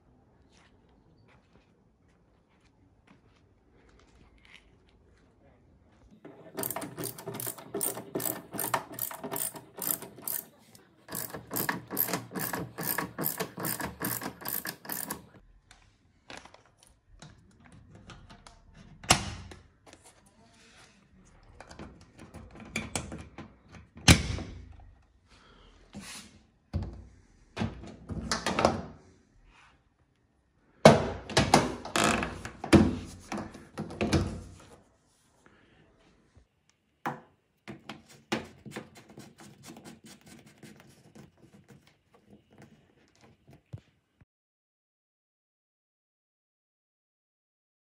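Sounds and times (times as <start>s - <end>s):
rapid mechanical ratchet clicking: 6.5s - 10.5s, 11.1s - 15.4s.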